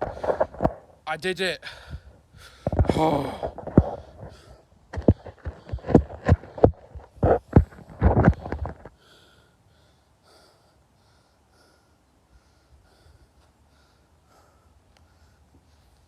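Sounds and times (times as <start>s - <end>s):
dull thumps: 0.0s - 1.0s, 2.6s - 9.0s.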